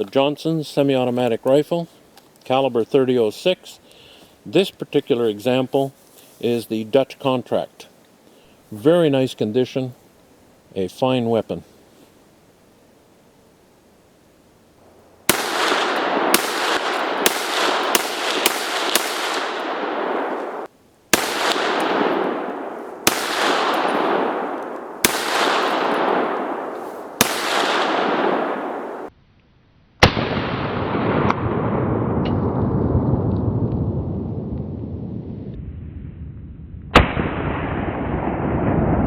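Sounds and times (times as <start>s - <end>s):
rifle shots echoing: 15.2s - 29.1s, 30.0s - 31.6s, 36.9s - 38.7s.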